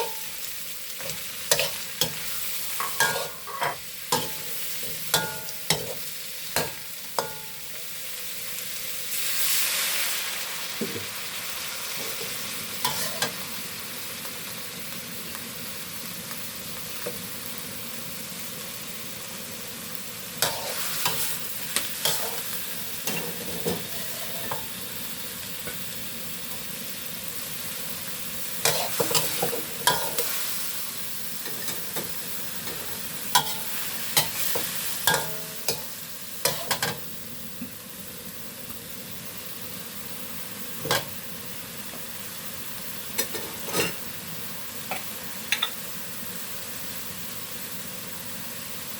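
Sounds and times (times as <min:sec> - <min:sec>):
food sizzling in pan: 0:00.0 - 0:48.9
spatula scraping pan: 0:01.0 - 0:06.0, 0:12.9 - 0:13.4, 0:20.4 - 0:24.7, 0:28.6 - 0:30.4.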